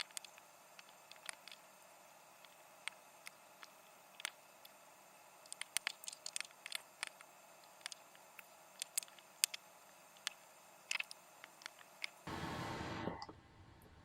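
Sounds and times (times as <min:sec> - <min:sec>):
small clicks and taps: 0:00.0 - 0:01.7, 0:02.4 - 0:04.8, 0:05.4 - 0:12.2
faint steady hiss: 0:00.0 - 0:14.0.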